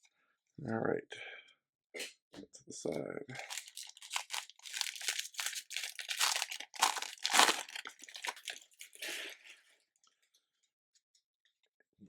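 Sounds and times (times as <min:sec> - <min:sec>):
plastic wrapper tearing and crinkling: 0:03.4 - 0:09.4.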